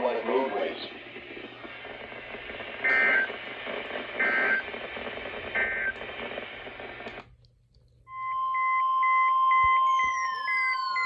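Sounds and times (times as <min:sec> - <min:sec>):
radio static: 0:00.0 - 0:07.3
warbling data bursts: 0:00.1 - 0:06.9, 0:09.8 - 0:11.0
rapid beeping: 0:00.1 - 0:07.0.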